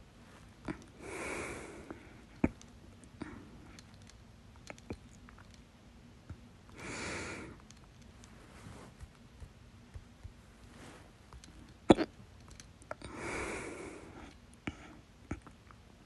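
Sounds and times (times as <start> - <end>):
person breathing: 0.7 - 2.5, 6.8 - 7.6, 13.0 - 15.0.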